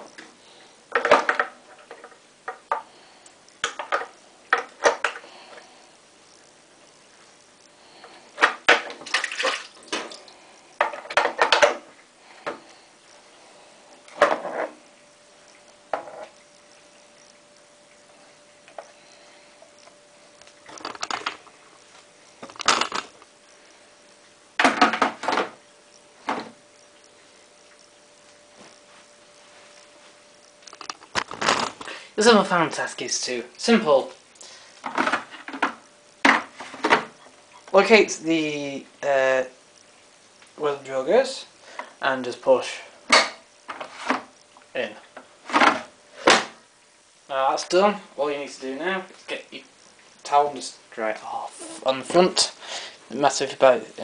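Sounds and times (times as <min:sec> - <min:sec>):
hard plastic clattering and knocking: 0:00.9 - 0:02.9.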